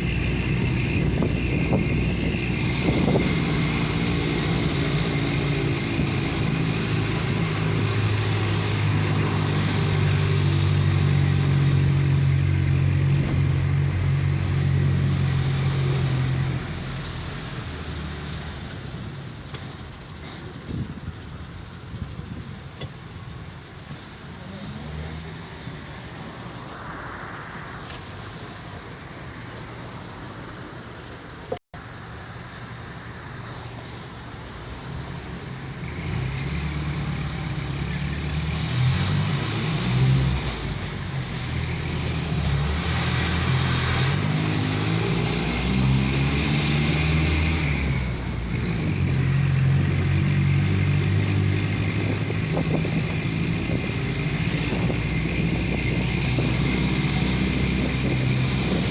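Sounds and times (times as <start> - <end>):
bus diesel engine: 0.0 - 58.9.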